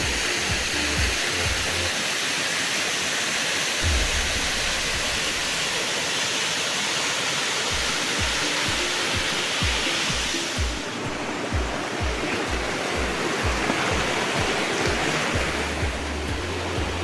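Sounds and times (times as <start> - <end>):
waterfall rushing: 0.0 - 17.0
low thumps: 3.8 - 5.8.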